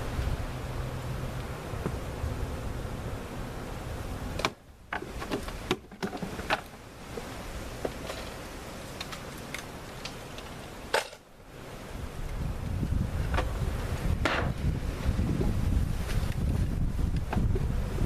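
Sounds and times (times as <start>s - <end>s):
wind noise on microphone: 0.0s - 7.8s, 11.5s - 18.0s.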